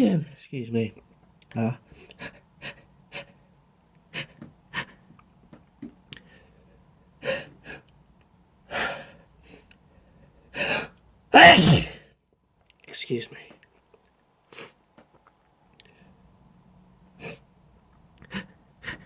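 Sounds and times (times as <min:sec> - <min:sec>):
person sneezing: 0:11.4 - 0:12.0.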